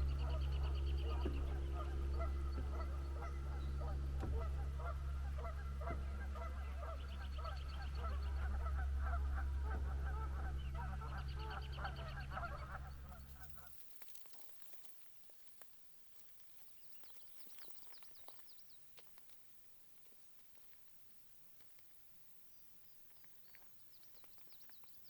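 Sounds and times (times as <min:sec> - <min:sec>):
geese honking: 0:00.0 - 0:13.8
steady low hum: 0:00.0 - 0:25.0.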